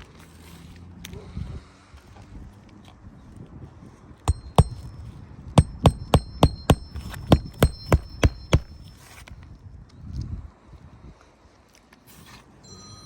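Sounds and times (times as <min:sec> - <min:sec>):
hammer striking roofing nails: 0:04.3 - 0:05.0, 0:05.6 - 0:08.9.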